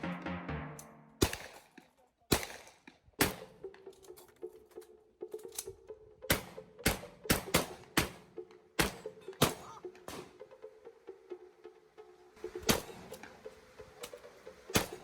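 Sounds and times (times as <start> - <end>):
shotgun shots: 0.0 - 1.6, 2.3 - 3.6, 8.8 - 10.3, 12.6 - 13.1, 14.7 - 15.0.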